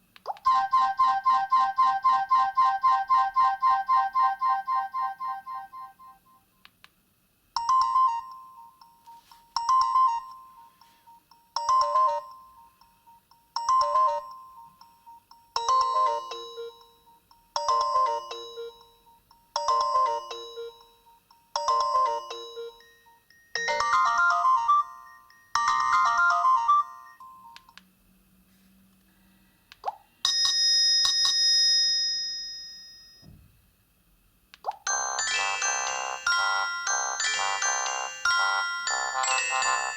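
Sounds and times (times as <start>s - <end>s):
phone ringtone chiming melody: 0.5s - 6.4s, 7.6s - 27.7s, 34.9s - 39.9s.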